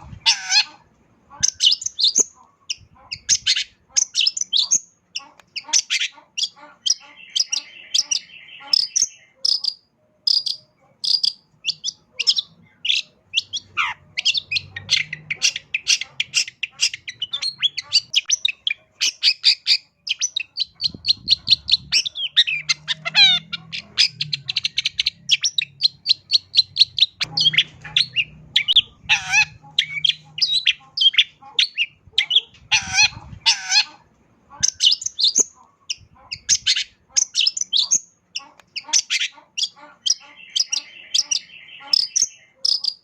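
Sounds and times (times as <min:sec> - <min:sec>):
bird singing chirps and trills: 0:01.4 - 0:33.9, 0:34.6 - 0:43.0.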